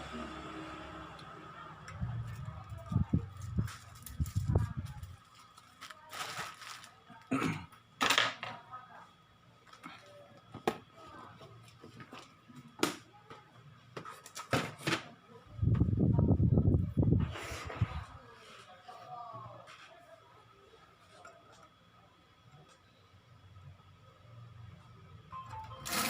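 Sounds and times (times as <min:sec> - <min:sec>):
faint steady high tone: 0:24.9 - 0:26.0.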